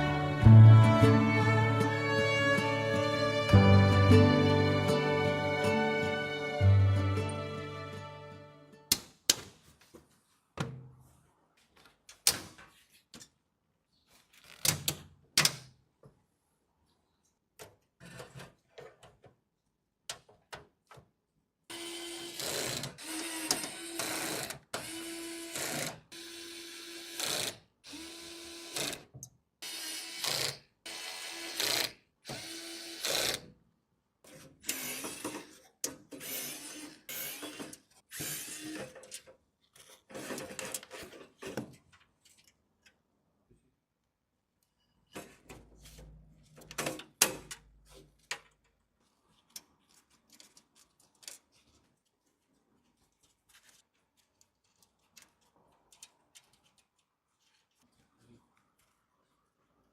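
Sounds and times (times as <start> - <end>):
small motorised tool whirring: 21.7 - 29.0, 29.6 - 33.5, 34.6 - 35.6, 36.2 - 39.0.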